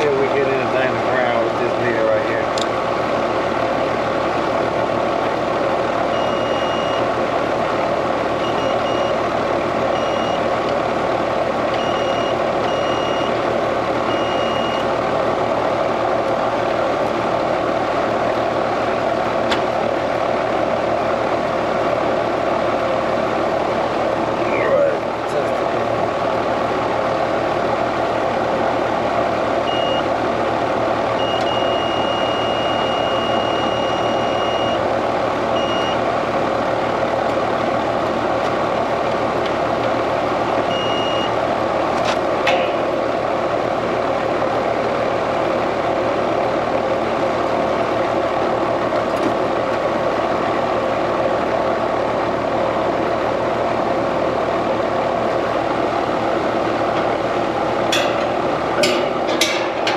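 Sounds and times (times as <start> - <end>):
multimeter continuity beeps: 6.1 - 7.1, 8.4 - 9.2, 9.9 - 10.5, 11.8 - 13.4, 14.1 - 14.9, 29.7 - 30.1, 31.2 - 34.8, 35.6 - 36.0, 40.7 - 41.4.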